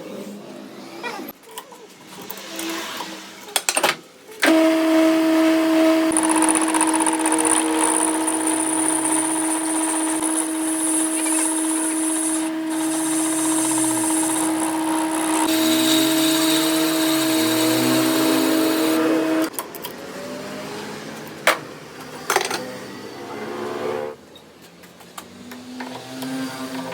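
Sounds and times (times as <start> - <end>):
workshop machine whining: 4.4 - 24.2.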